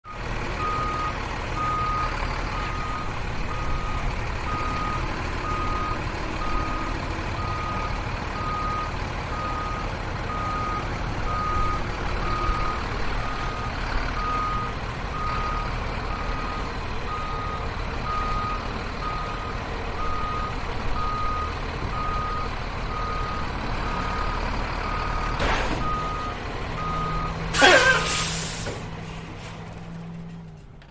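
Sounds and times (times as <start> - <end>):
vehicle reversing alarm beeping: 0.1 - 28.6
air hissing burst: 27.6 - 28.8.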